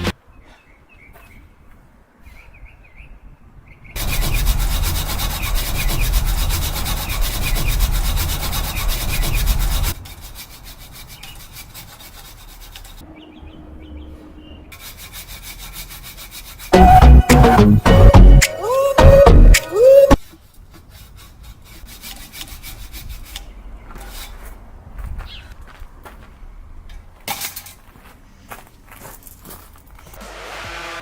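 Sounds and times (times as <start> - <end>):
chainsaw cutting through log: 4.0 - 8.8, 30.2 - 31.0.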